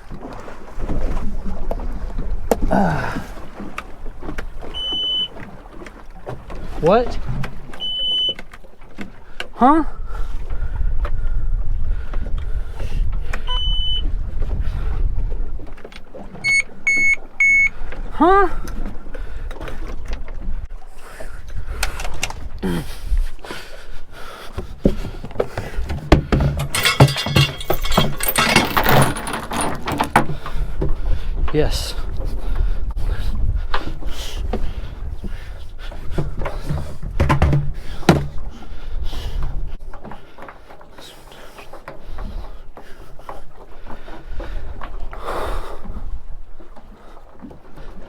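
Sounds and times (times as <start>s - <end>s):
wind rumbling on the microphone: 0.0s - 7.7s, 9.9s - 16.4s, 17.7s - 26.7s, 27.6s - 40.0s, 42.0s - 48.0s
gear rattling and jangling: 25.8s - 30.6s.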